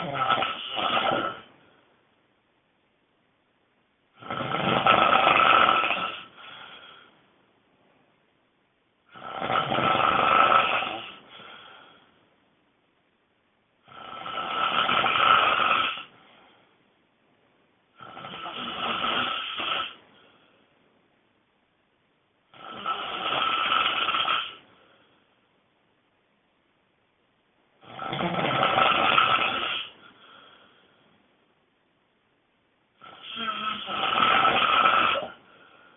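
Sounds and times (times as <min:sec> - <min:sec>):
person snoring loudly: 0:00.0 - 0:01.5, 0:04.2 - 0:07.0, 0:09.1 - 0:11.8, 0:13.8 - 0:16.1, 0:18.0 - 0:20.0, 0:22.5 - 0:24.6, 0:27.8 - 0:30.0, 0:33.0 - 0:35.5.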